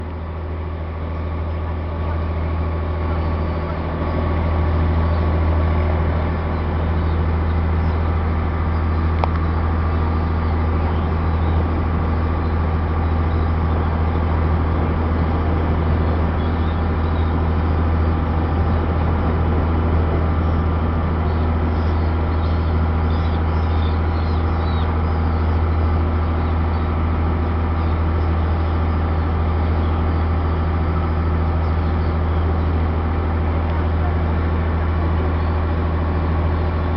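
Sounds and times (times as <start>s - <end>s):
boat engine droning: 0.0s - 36.9s
faint bird chirps: 21.2s - 32.8s.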